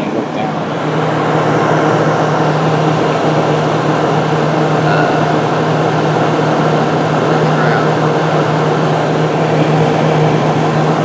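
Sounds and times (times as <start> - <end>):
air conditioner fan rushing: 0.0 - 11.0
compressor low hum: 0.0 - 11.0.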